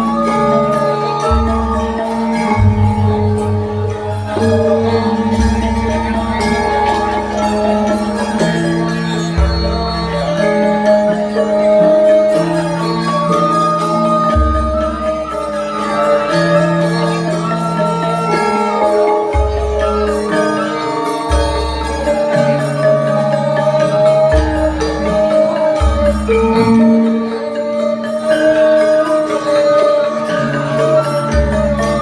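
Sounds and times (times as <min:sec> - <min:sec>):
metallophones ringing melody: 0:00.0 - 0:32.0.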